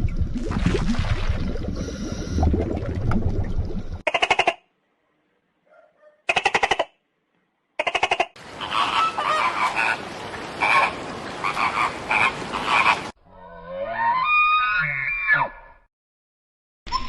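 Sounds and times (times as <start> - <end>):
chorus of frogs calling: 7.8 - 13.2.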